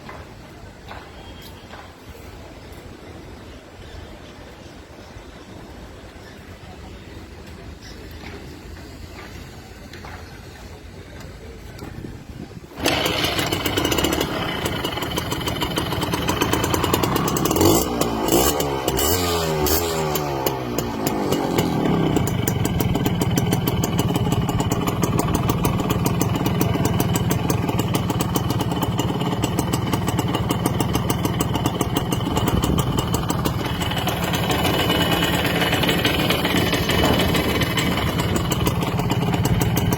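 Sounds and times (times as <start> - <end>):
motorcycle engine idling: 12.7 - 39.9
motorcycle engine revving: 12.7 - 39.9.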